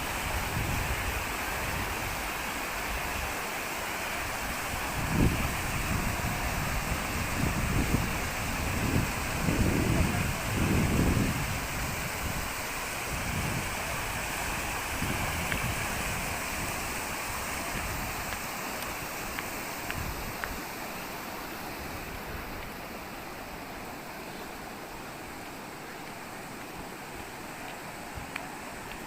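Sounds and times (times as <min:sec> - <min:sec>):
wind rumble on microphone: 0:00.0 - 0:03.4, 0:04.2 - 0:20.6
stream rushing: 0:00.0 - 0:29.0.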